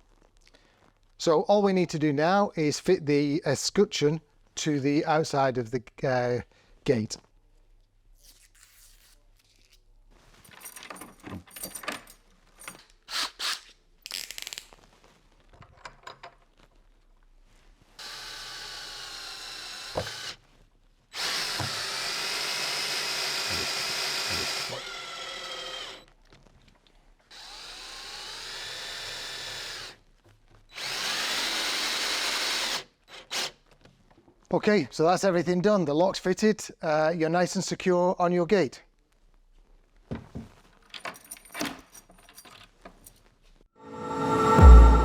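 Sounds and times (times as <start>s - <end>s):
small clicks and knocks of parts: 15.5s - 16.8s, 40.7s - 43.3s
power drill running: 18.0s - 20.4s, 21.2s - 26.0s, 27.3s - 30.0s, 30.7s - 33.5s.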